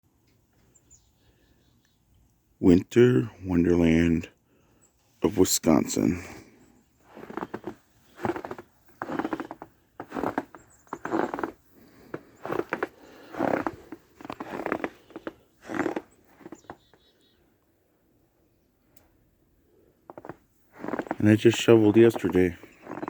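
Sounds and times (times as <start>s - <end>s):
footsteps crunching in snow: 7.0s - 17.0s, 20.1s - 23.0s.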